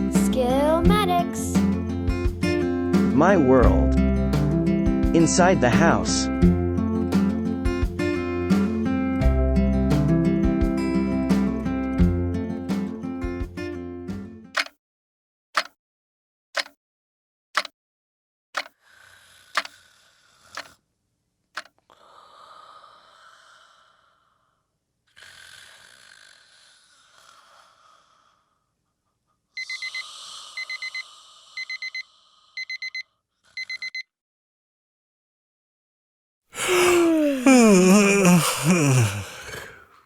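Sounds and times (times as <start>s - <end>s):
clock ticking: 15.6s - 15.8s, 16.6s - 16.8s
breathy snores: 18.7s - 20.8s, 21.8s - 28.7s, 29.7s - 32.7s, 36.6s - 40.0s
digital alarm clock beeping: 29.6s - 34.1s.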